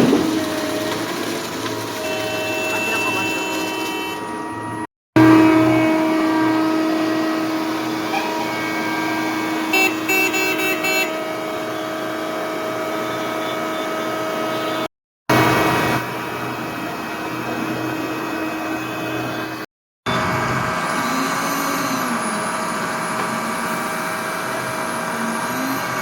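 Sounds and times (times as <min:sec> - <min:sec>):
heavy machinery engine drone: 0:00.0 - 0:26.0
short horn toots: 0:02.0 - 0:11.4.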